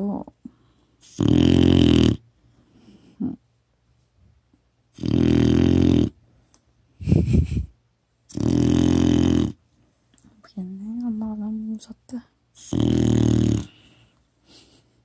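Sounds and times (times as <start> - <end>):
quiet breathing: 0.4 - 1.1, 2.3 - 3.5, 13.6 - 15.0
puppy snoring: 1.0 - 3.4, 4.9 - 6.2, 8.3 - 9.6, 12.6 - 14.1.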